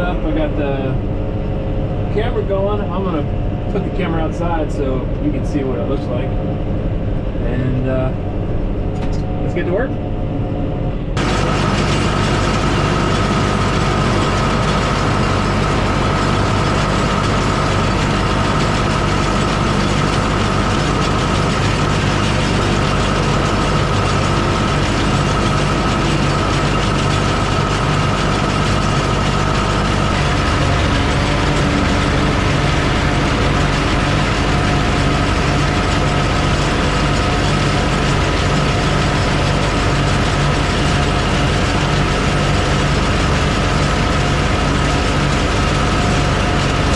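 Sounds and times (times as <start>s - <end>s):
high whine: 0.0s - 46.9s
low hum: 0.0s - 46.9s
baler machinery clattering: 11.2s - 46.9s
tractor engine running: 11.2s - 46.9s.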